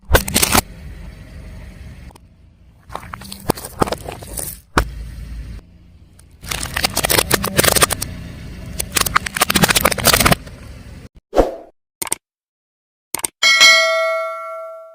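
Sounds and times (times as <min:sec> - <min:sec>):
low rumble of car: 0:00.2 - 0:11.1.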